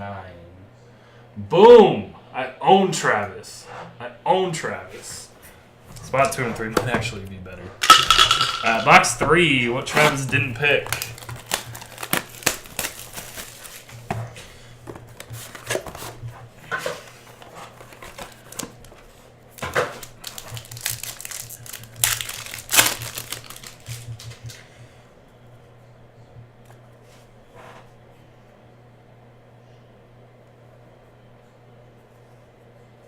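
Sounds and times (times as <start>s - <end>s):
steady low hum: 0.0s - 33.0s
plastic wrap crinkling: 9.6s - 14.1s, 17.4s - 24.5s.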